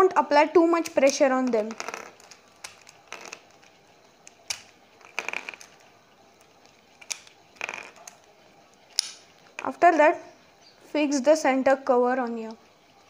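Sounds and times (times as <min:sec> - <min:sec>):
plastic puzzle pieces clicking: 0:00.7 - 0:09.7.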